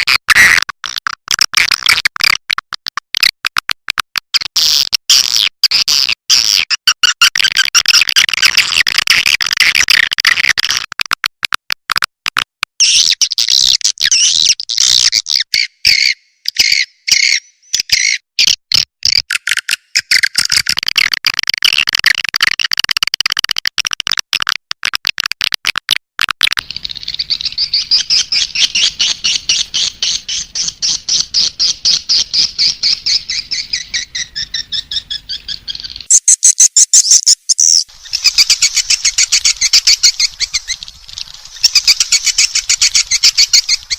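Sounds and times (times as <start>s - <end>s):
swiftlets twittering: 26.7s - 43.9s.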